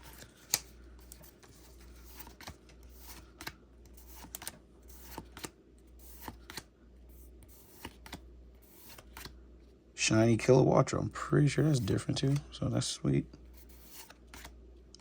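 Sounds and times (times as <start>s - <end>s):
trading cards clicking and sliding: 0.0s - 9.4s, 11.6s - 12.5s, 13.5s - 15.0s.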